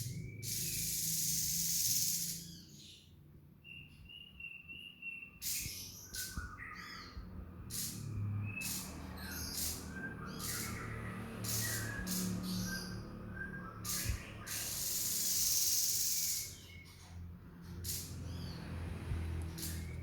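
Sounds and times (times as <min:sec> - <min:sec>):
bird singing with harsh rattles and trills: 0:00.0 - 0:20.0.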